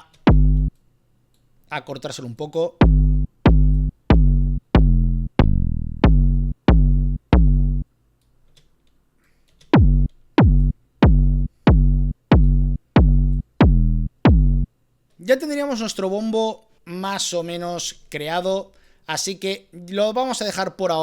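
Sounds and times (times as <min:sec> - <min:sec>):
distorted synthesized kick drum: 0:00.3 - 0:00.7, 0:02.8 - 0:07.8, 0:09.8 - 0:14.7.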